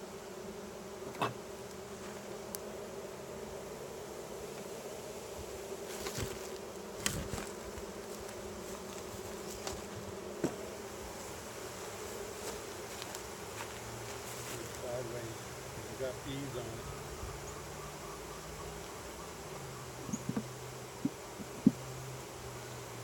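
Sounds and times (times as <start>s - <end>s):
honey bees buzzing: 0.0s - 23.0s
sharp knocks: 20.2s - 20.5s.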